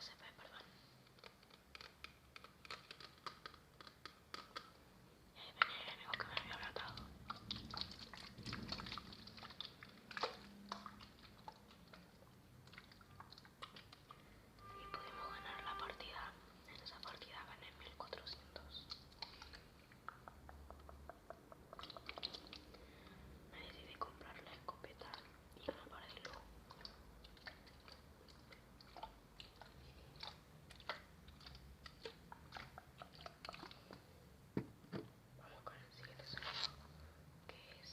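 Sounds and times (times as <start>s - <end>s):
small clicks and taps: 1.0s - 4.8s.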